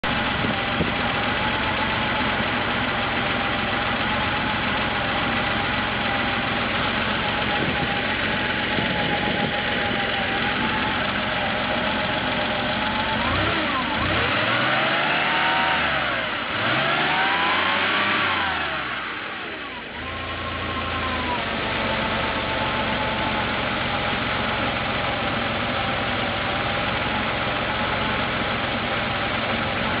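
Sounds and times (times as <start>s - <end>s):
car engine idling and revving: 0.0s - 30.0s.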